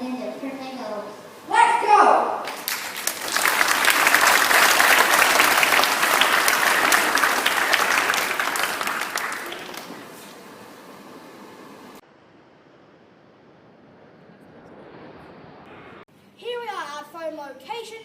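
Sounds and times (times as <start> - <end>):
audience applauding: 2.4 - 10.2.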